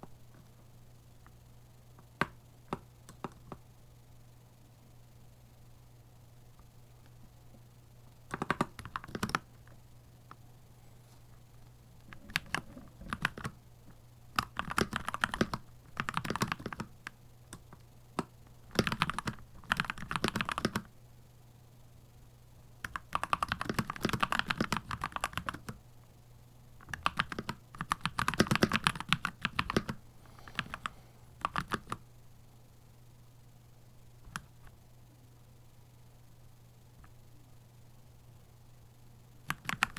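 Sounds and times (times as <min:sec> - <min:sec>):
faint low hum: 0:00.0 - 0:39.9
mechanical keyboard typing: 0:08.3 - 0:09.6, 0:12.1 - 0:13.6, 0:14.3 - 0:20.9, 0:22.8 - 0:25.8, 0:26.8 - 0:32.0, 0:39.4 - 0:39.9.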